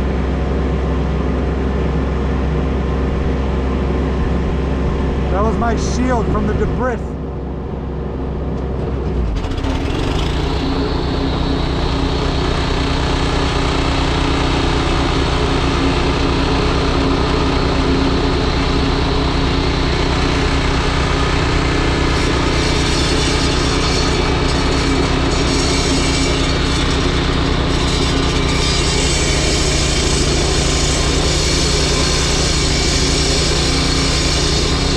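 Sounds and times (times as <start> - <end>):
excavator diesel engine revving: 7.9 - 34.9.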